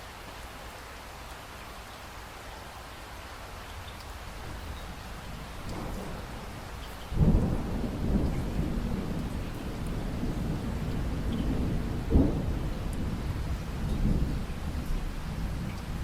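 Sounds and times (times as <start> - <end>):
rain falling: 0.0 - 16.0
thunder rumbling: 4.5 - 16.0
sharp thunder crack: 7.2 - 13.2.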